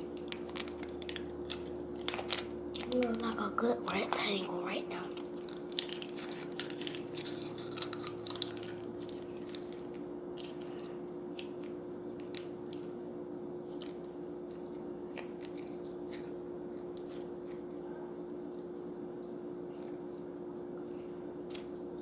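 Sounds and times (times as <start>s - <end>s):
craft material crinkling and clicking: 0.0s - 13.0s, 13.7s - 17.7s
steady hum: 0.0s - 22.0s.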